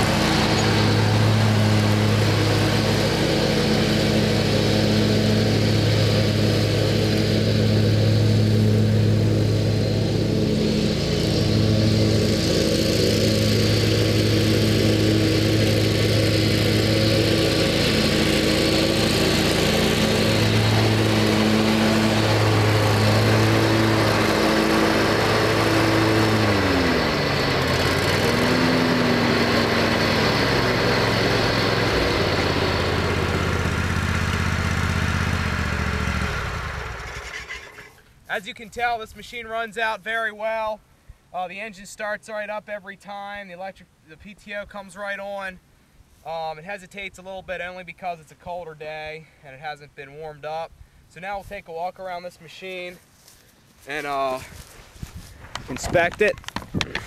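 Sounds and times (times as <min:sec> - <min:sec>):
mower engine running: 0:00.0 - 0:38.1.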